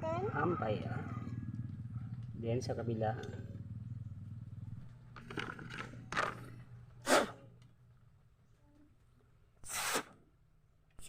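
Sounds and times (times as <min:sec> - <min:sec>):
low steady hum: 0:00.0 - 0:09.6
puffs of air blown by mouth: 0:07.0 - 0:07.4, 0:09.6 - 0:10.2.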